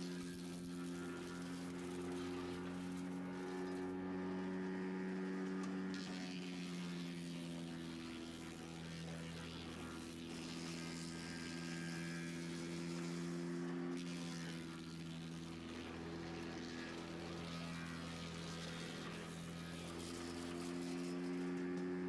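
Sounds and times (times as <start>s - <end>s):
wood chipper engine humming: 0.0s - 22.0s.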